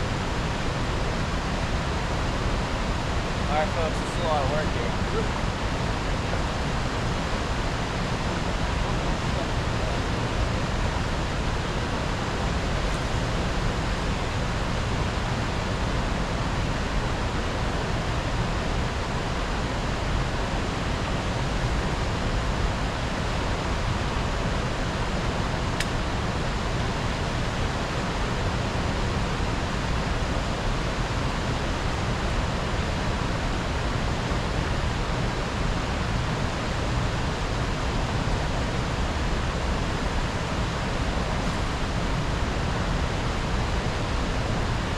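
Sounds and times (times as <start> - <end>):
fast-flowing river water: 0.0 - 44.9.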